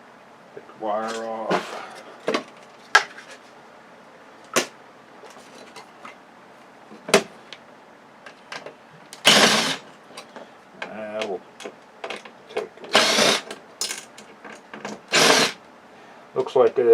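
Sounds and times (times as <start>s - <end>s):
television parts clicking and knocking: 11.2s - 15.1s.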